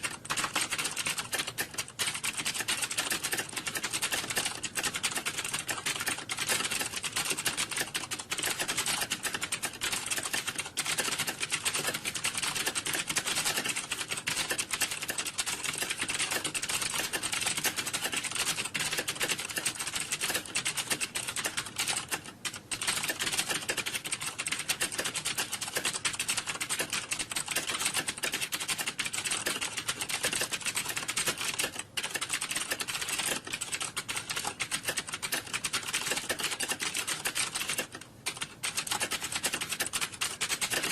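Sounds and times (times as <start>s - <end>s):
many keyboards typing: 0.0s - 40.9s.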